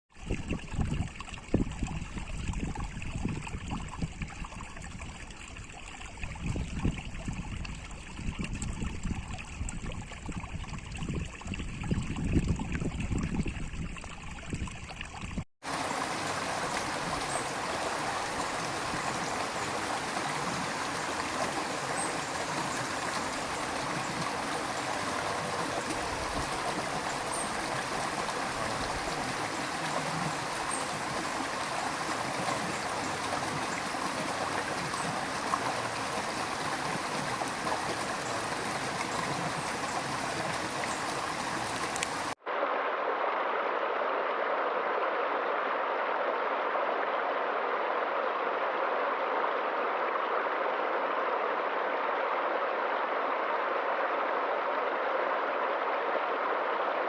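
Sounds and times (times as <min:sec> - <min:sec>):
river water running: 0:14.0 - 0:57.0.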